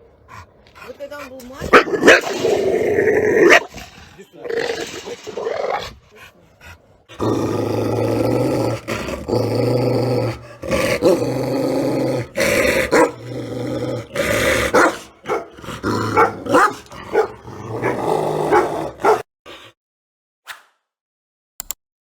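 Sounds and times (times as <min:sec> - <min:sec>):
dog growling: 0:01.6 - 0:19.7
dog barking: 0:01.7 - 0:02.4, 0:03.4 - 0:03.8, 0:12.4 - 0:13.3, 0:14.1 - 0:19.3.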